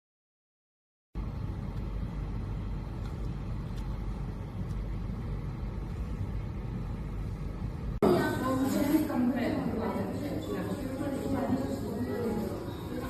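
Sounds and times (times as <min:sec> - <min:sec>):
fan airflow rushing: 0:01.2 - 0:13.0.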